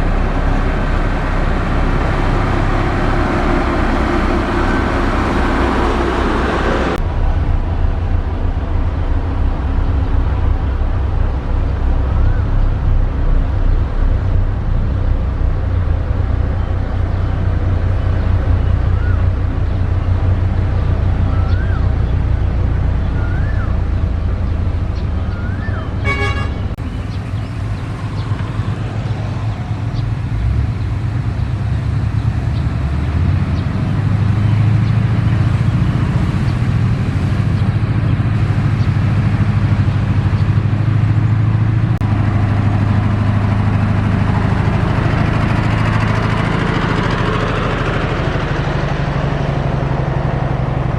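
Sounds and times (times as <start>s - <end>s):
diesel machinery engine drone: 0.0s - 50.9s.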